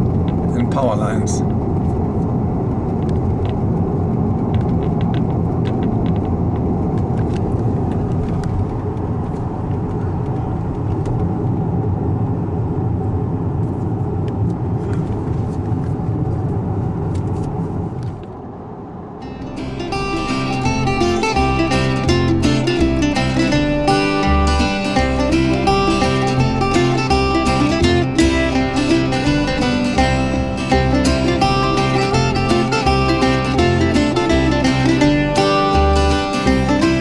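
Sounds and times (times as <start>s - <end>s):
car tyre and road noise: 0.0s - 37.0s.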